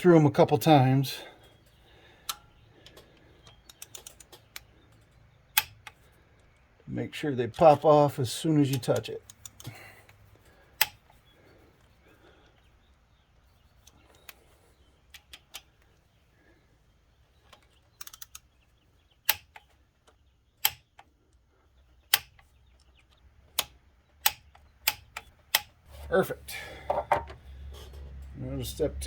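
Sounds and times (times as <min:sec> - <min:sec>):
torque wrench clicking: 0:18.0 - 0:18.4.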